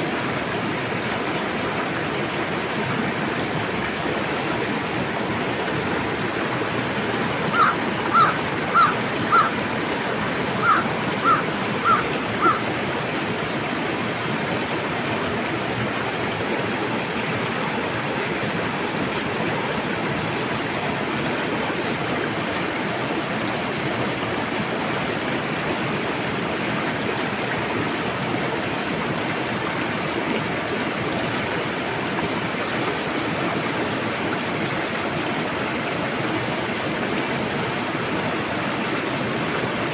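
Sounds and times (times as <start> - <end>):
river water rushing: 0.0 - 39.9
bird calling short notes: 7.5 - 9.6, 10.6 - 12.6.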